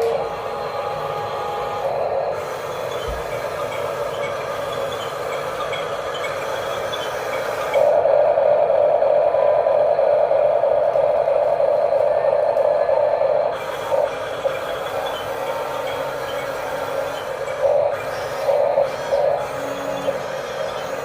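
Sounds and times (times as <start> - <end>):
toy electric motors whirring: 0.0 - 8.0, 13.6 - 21.0.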